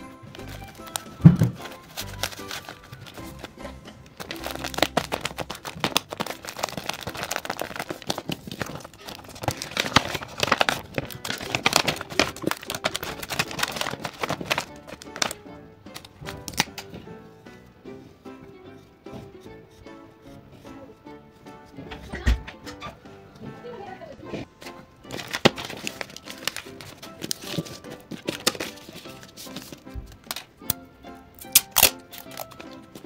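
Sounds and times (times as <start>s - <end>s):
paper crinkling: 0.0s - 17.2s, 24.3s - 30.5s, 31.4s - 33.0s
background music: 0.0s - 33.0s.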